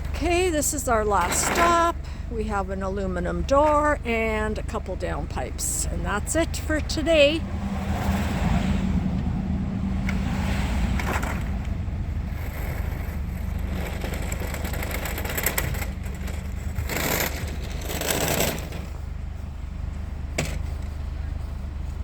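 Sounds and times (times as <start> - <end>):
vehicle engine rumbling: 0.0 - 22.0
scraping or rattling noises: 1.1 - 2.0, 7.8 - 19.1.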